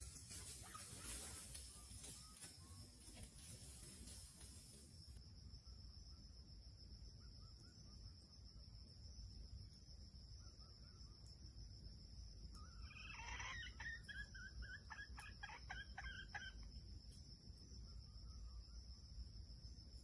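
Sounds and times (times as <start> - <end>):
junglefowl calls and clucks: 0.0 - 3.2, 12.6 - 16.7.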